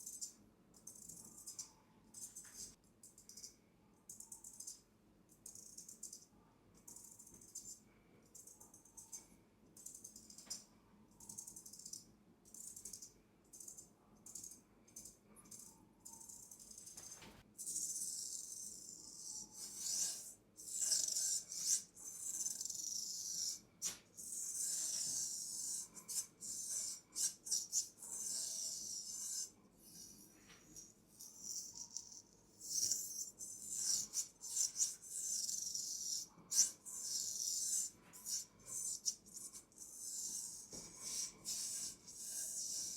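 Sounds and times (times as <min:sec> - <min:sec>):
razor scraping over skin: 0:17.6 - 0:42.9.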